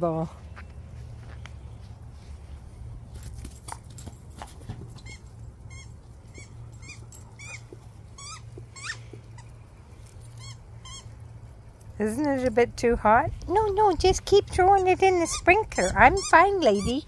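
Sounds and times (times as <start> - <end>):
squeaky toy squeaking: 5.0 - 9.6, 10.2 - 11.2, 14.8 - 17.0.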